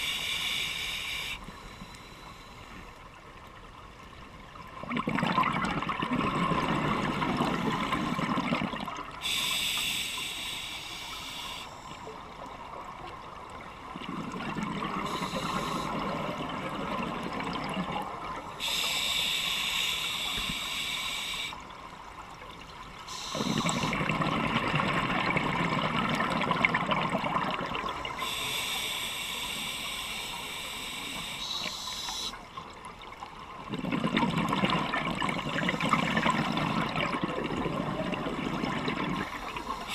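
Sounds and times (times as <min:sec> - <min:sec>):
regulator hiss on inhale: 0:00.0 - 0:03.0, 0:07.4 - 0:08.2, 0:09.2 - 0:12.2, 0:14.9 - 0:16.3, 0:18.5 - 0:21.7, 0:23.0 - 0:24.0, 0:28.0 - 0:32.5, 0:39.2 - 0:39.9
exhaled bubbles rumbling: 0:04.7 - 0:09.2, 0:13.4 - 0:18.4, 0:23.2 - 0:28.2, 0:33.6 - 0:39.8.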